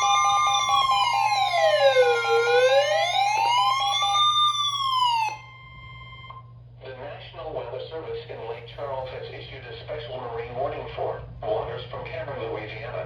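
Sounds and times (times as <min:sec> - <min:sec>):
steady tone: 0:00.0 - 0:06.4
wailing siren alert tone: 0:00.0 - 0:06.4
pulsing beep: 0:05.4 - 0:06.4.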